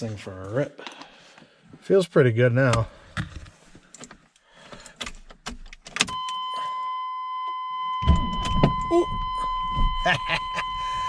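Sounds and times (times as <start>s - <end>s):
electronic warning tone: 6.1s - 11.0s.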